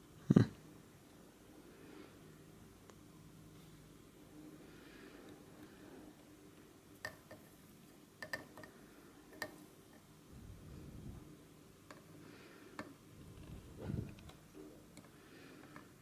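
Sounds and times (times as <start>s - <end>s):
low steady hum: 10.1s - 15.6s.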